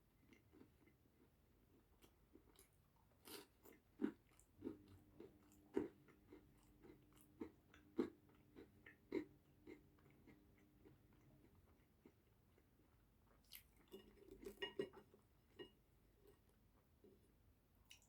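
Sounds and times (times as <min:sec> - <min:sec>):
person chewing and biting pizza: 0:01.7 - 0:12.7.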